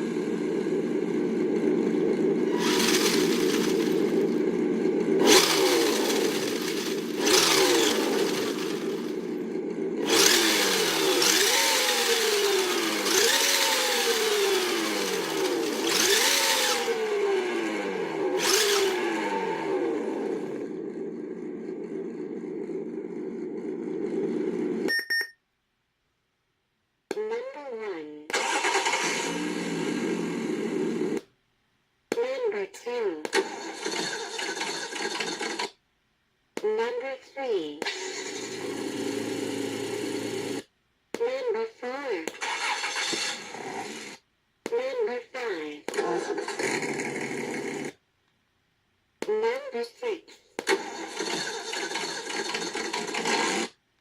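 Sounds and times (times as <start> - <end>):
simulated engine idling and revving: 0.0 - 24.9, 28.8 - 31.2, 37.8 - 40.7, 42.5 - 44.2, 45.9 - 48.0
short electronic beep: 24.9 - 25.4.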